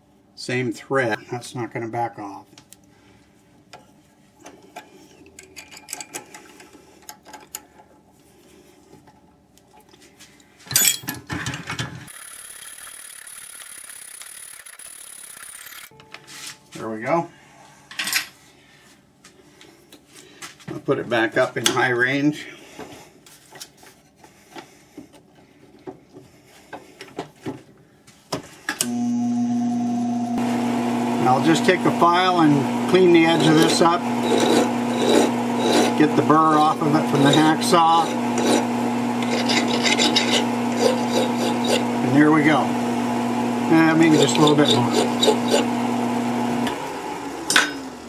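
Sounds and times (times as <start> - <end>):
metal tools clicking and knocking: 5.2 - 7.8, 10.7 - 11.9
lathe motor whine: 28.8 - 48.0.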